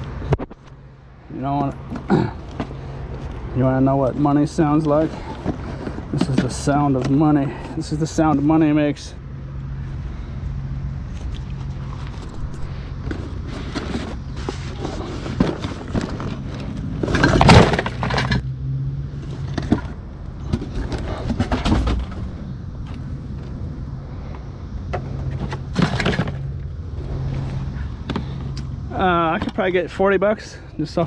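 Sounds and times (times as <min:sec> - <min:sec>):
low engine hum: 0:00.0 - 0:31.0
scrap metal clattering: 0:12.0 - 0:18.4, 0:19.3 - 0:22.3, 0:25.0 - 0:26.5.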